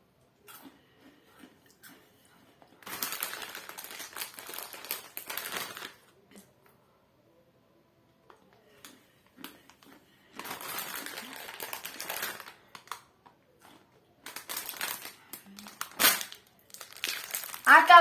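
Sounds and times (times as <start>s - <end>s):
foil snack bag crinkling: 2.8s - 6.1s, 10.4s - 13.0s, 14.2s - 18.0s.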